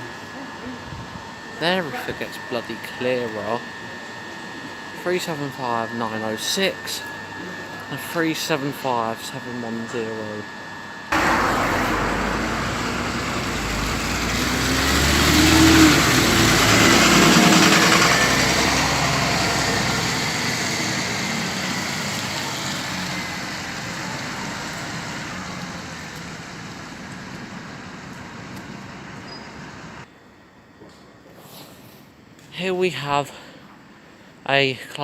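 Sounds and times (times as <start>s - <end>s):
train pulling out: 10.9s - 30.0s
low rumble: 11.2s - 15.1s.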